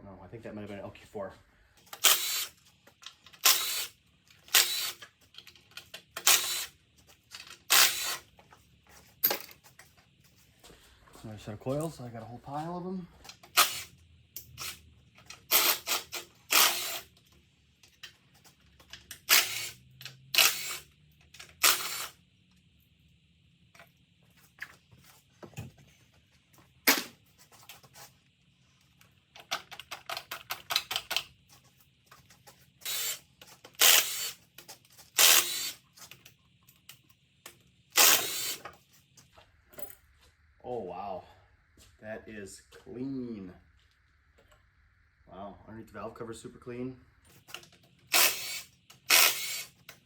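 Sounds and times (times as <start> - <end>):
ratchet clicking: 1.9 - 2.6, 3.3 - 3.9, 15.4 - 17.1, 19.1 - 22.2, 32.8 - 34.4, 35.1 - 35.8, 37.9 - 38.6, 48.0 - 50.0.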